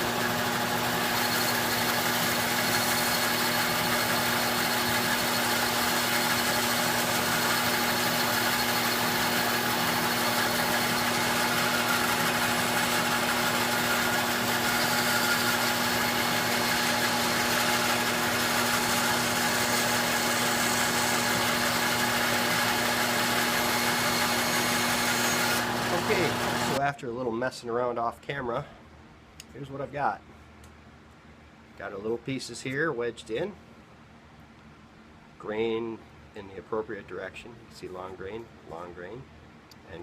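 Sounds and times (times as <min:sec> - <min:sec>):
dust collector motor hum: 0:00.0 - 0:26.8.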